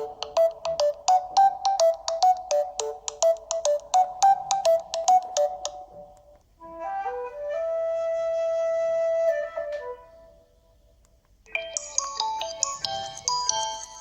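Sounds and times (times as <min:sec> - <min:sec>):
mobile phone ringtone melody: 0:00.0 - 0:06.0, 0:11.5 - 0:14.0.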